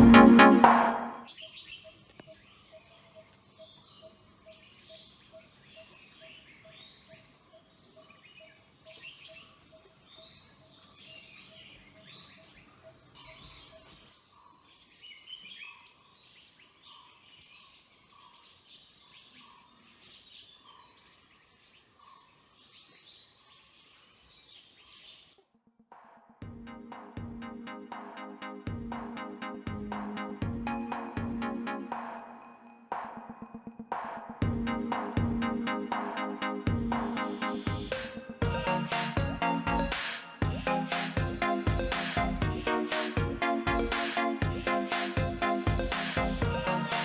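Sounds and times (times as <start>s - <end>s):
wild birds chirping and trilling: 1.2s - 25.4s.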